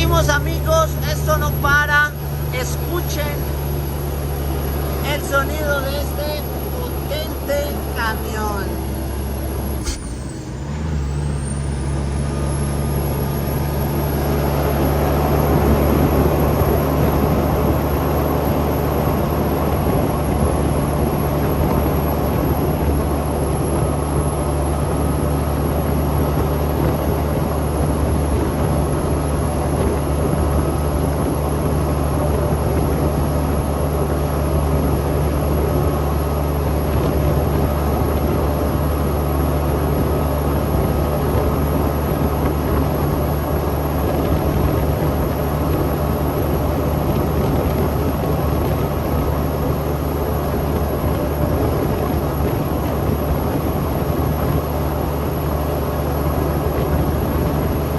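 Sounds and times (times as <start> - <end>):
thin high whine: 0.0 - 17.7
truck diesel engine droning: 0.0 - 57.9.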